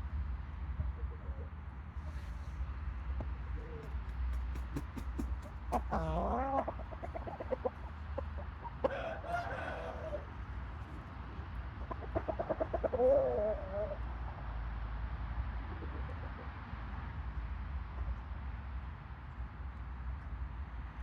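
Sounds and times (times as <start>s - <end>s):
rooster clucking and calling: 3.2s - 14.2s, 15.7s - 16.6s.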